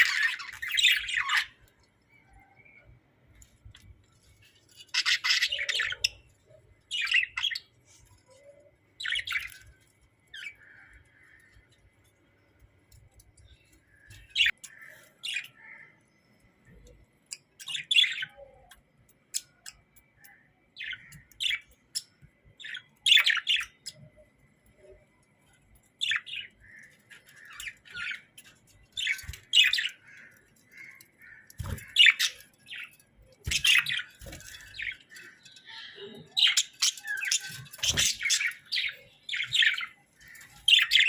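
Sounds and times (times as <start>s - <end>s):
budgerigars chirping and squawking: 0.0s - 1.7s, 4.8s - 6.3s, 20.8s - 24.1s, 26.0s - 41.0s.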